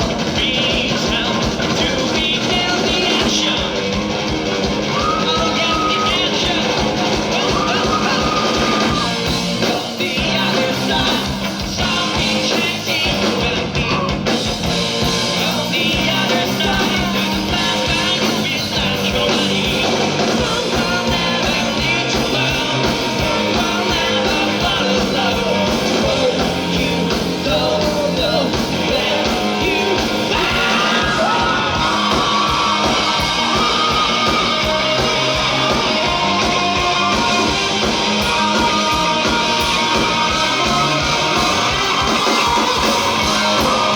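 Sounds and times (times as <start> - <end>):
rock band playing live: 0.0 - 43.9
person singing: 4.9 - 14.3, 15.0 - 43.9.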